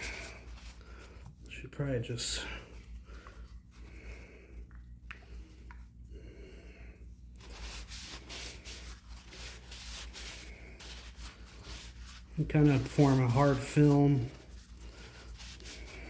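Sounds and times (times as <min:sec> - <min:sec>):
low electrical hum: 0:00.0 - 0:16.0
hand rubbing wooden handle: 0:07.4 - 0:16.0.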